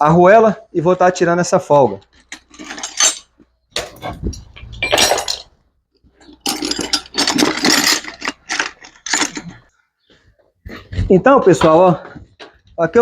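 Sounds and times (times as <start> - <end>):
metal washers and nuts clinking: 2.1 - 9.7.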